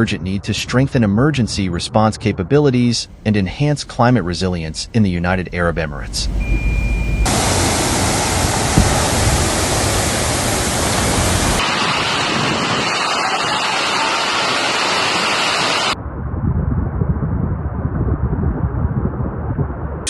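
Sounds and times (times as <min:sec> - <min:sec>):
loud steady rushing noise: 0:03.0 - 0:16.0.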